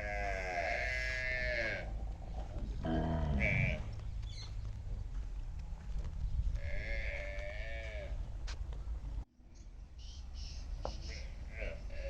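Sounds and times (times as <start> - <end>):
farm animal bleating: 0.0 - 2.0, 2.8 - 4.0, 6.6 - 8.2, 11.0 - 12.0.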